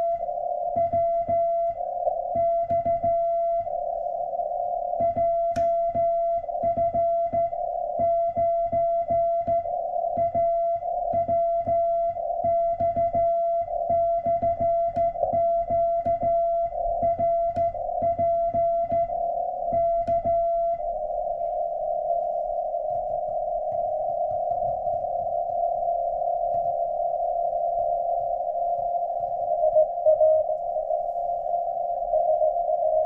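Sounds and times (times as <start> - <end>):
morse code tone with key clicks: 0.0 - 3.9, 4.7 - 21.4, 28.8 - 31.3, 32.1 - 33.0.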